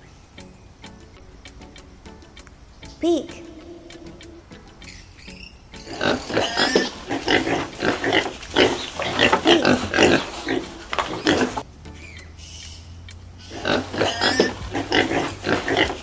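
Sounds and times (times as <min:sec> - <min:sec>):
pig grunting: 0:05.9 - 0:11.6, 0:13.4 - 0:16.0.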